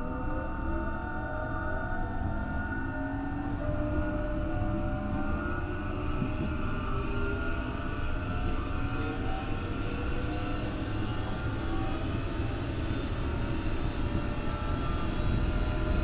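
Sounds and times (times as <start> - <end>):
electric train motor whine: 2.2 - 16.0
train wheels rumbling on rail: 10.3 - 16.0.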